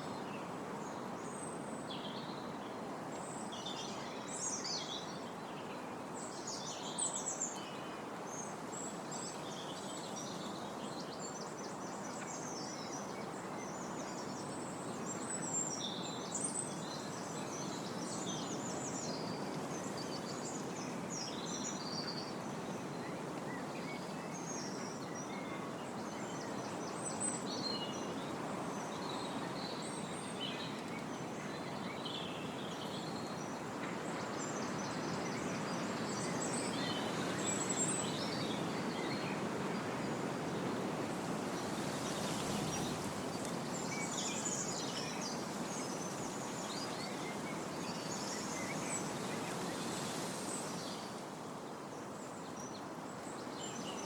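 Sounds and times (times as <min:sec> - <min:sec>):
wind through rustling leaves: 0:03.3 - 0:54.0.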